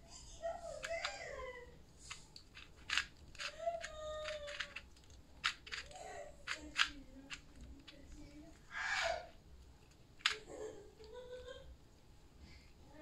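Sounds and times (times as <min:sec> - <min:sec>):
puzzle cube clicks and scrapes: 0:02.0 - 0:08.1.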